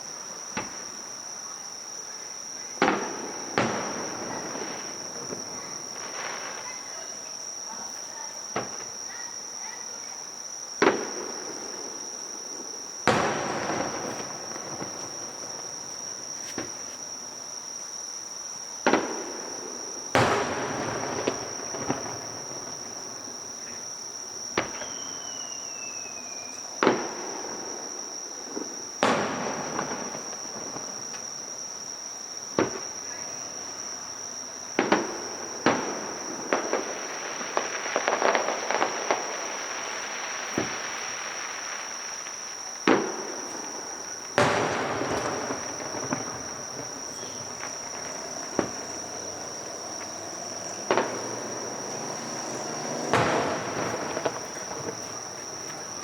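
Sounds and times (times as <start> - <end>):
firework crackling: 0.0 - 9.1, 10.8 - 17.8, 18.8 - 56.0
fireworks bangs with echo: 0.0 - 9.2, 10.8 - 56.0
falling firework whistle: 0.0 - 10.1, 10.8 - 56.0
insects chirring: 0.0 - 56.0.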